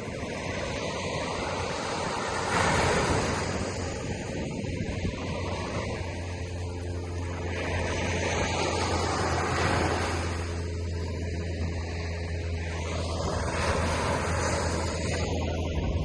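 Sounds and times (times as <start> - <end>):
surf washing onto beach: 0.0 - 15.4
low rumble: 0.0 - 16.0.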